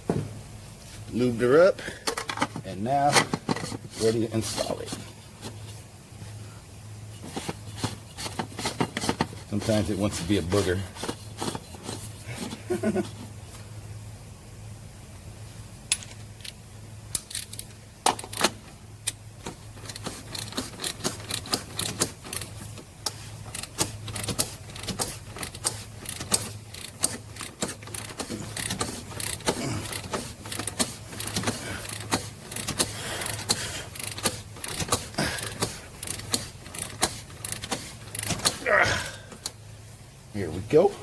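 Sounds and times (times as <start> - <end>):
ratchet clicking: 15.9 - 38.6.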